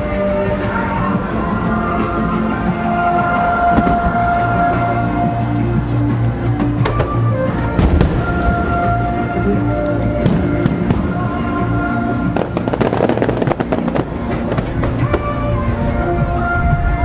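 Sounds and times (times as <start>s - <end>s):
loud show music: 0.0s - 17.0s
fireworks bursting and crackling: 6.6s - 16.4s.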